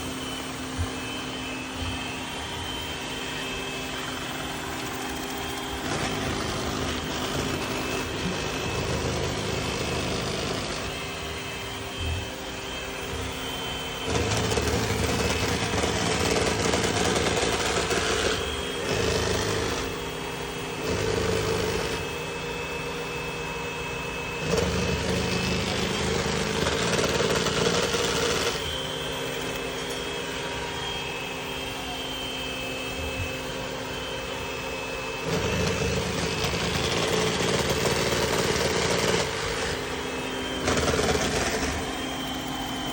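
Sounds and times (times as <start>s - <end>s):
robot vacuum motor hum: 0.0s - 42.9s
rough grinding: 35.2s - 42.2s.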